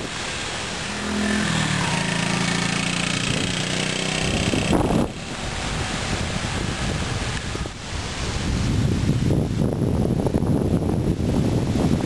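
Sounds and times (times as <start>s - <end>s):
engine running: 0.0s - 8.1s
wind buffeting microphone: 0.0s - 12.0s.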